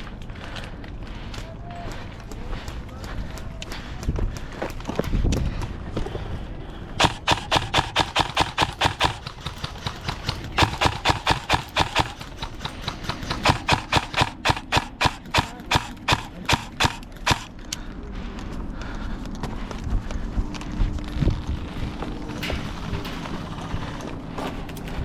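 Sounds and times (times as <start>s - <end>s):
airsoft rifle shots: 7.0s - 17.5s.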